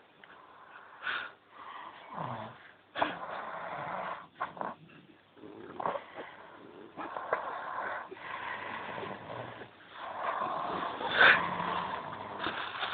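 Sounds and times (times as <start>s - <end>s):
person snoring: 5.5s - 12.6s.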